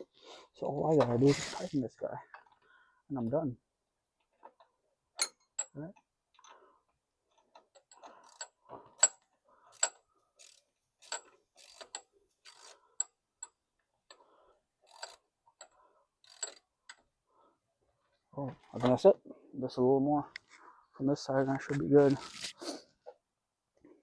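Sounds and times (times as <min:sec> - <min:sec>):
wrench clicking: 0:07.6 - 0:14.2, 0:14.8 - 0:17.0.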